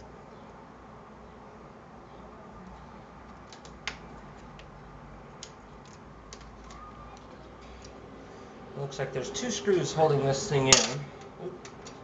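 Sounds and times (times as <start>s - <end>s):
small hard parts clicking: 3.2s - 8.0s, 10.7s - 12.0s.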